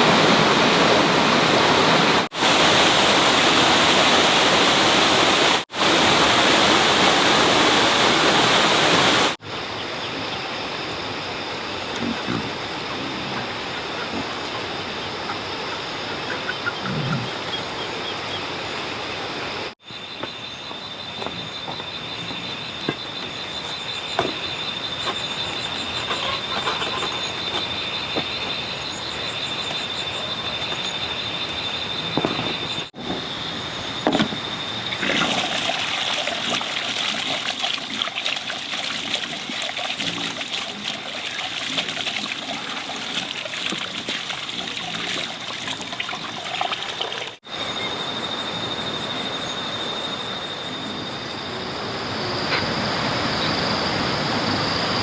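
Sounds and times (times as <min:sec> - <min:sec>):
water running and trickling: 0:34.7 - 0:47.4.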